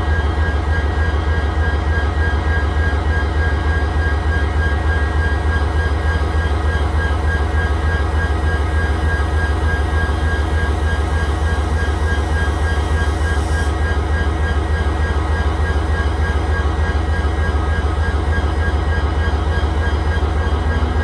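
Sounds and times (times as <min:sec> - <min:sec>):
diesel locomotive engine humming: 0:00.0 - 0:21.0
high-pitched whine: 0:09.9 - 0:21.0.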